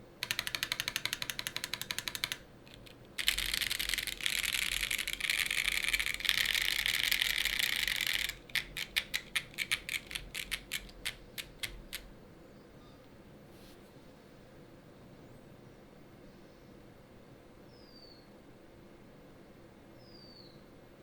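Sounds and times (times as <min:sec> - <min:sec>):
mechanical keyboard typing: 0:00.1 - 0:12.1.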